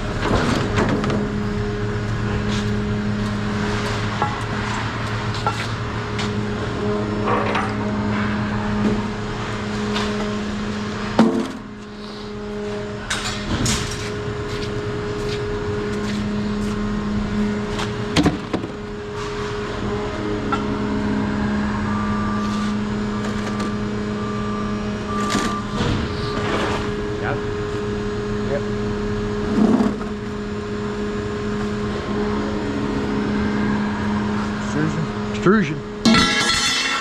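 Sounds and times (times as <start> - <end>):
sharp knocks and bangs: 36.0 - 37.0.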